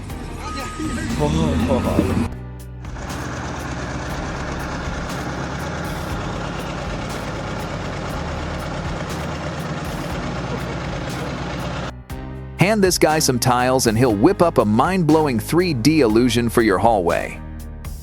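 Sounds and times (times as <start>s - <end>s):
large engine humming: 0.0s - 12.2s.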